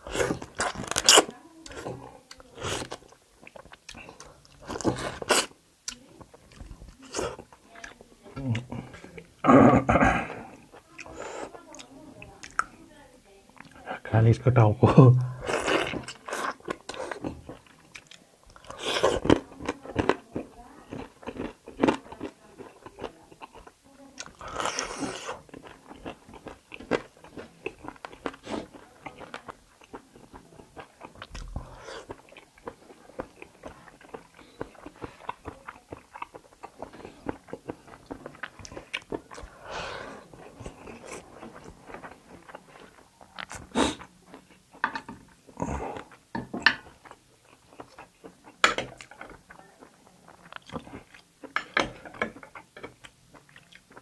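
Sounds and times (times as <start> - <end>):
chewing and crunching bones: 0.0 - 9.0, 15.4 - 54.0
wet mouth clicks: 11.0 - 12.7.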